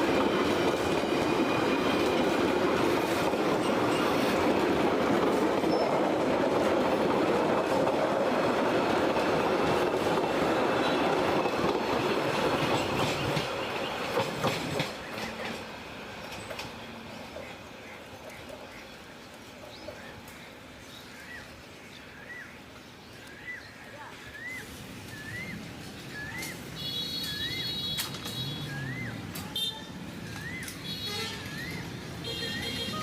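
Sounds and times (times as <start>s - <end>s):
wheels clicking over rail joints: 0.0s - 20.4s, 25.8s - 33.0s
train passing on rails: 0.0s - 33.0s.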